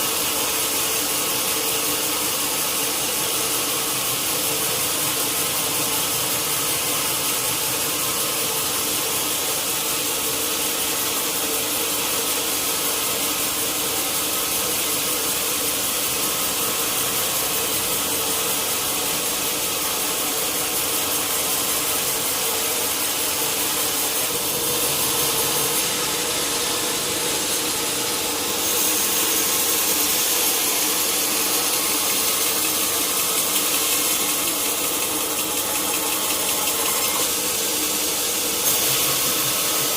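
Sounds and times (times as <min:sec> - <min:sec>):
saw cutting through log: 0:00.0 - 0:39.9
machine humming: 0:14.7 - 0:39.9.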